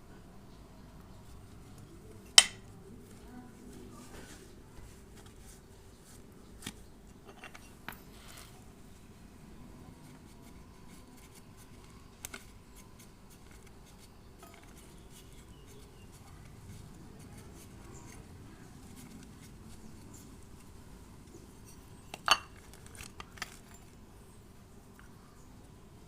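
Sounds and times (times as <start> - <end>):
small tools clicking and tapping: 1.8 - 2.7.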